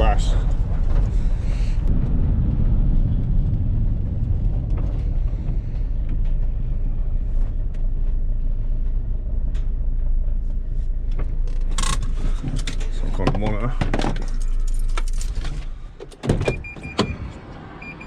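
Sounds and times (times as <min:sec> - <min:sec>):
van engine rumbling: 0:00.0 - 0:18.0
faint clicks and rattles: 0:04.0 - 0:16.3.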